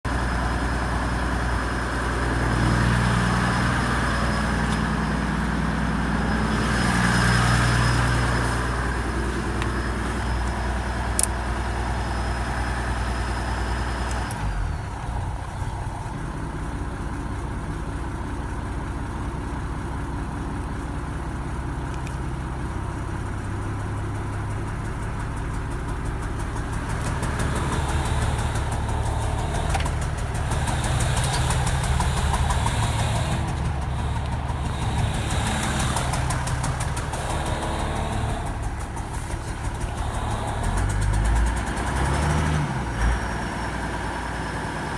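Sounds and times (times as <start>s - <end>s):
diesel engine idling roughly: 0.0s - 44.9s
sharp click: 11.2s - 11.4s, 22.0s - 22.2s
steady high whine: 27.2s - 41.1s.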